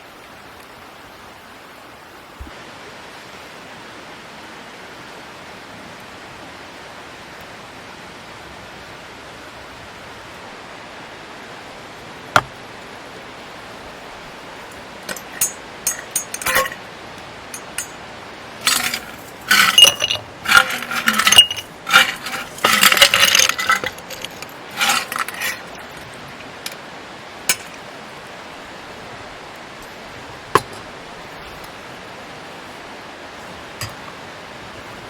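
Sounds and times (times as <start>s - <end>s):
small hard objects clinking: 15.1s - 16.8s, 17.5s - 18.0s, 18.6s - 26.8s, 27.5s - 27.8s.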